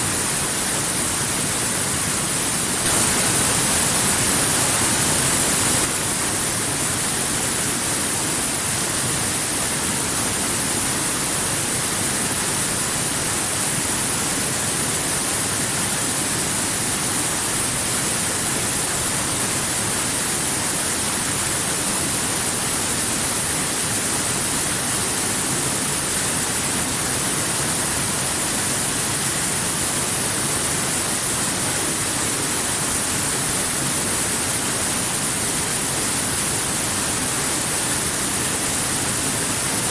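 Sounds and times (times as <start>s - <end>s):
waterfall rushing: 0.4s - 8.3s.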